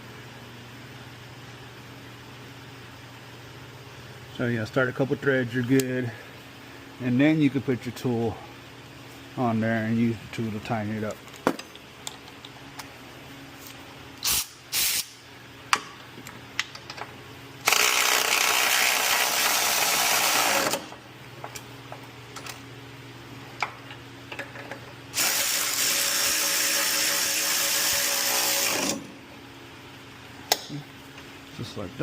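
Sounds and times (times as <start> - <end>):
power ratchet running: 17.6 - 20.9, 25.1 - 29.1.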